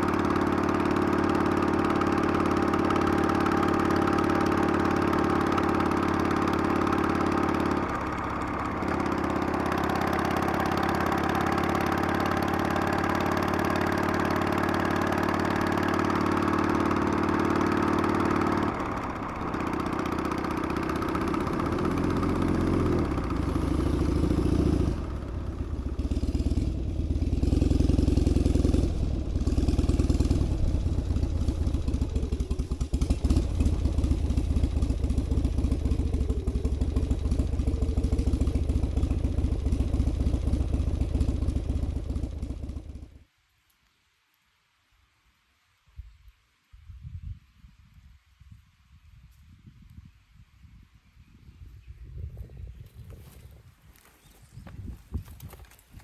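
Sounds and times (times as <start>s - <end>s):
motorcycle engine revving: 0.0s - 43.2s.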